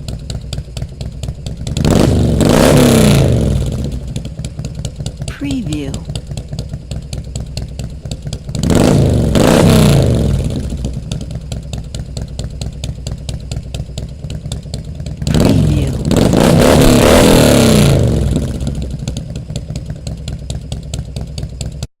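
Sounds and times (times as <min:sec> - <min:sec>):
motorcycle engine idling and revving: 0:00.0 - 0:21.9.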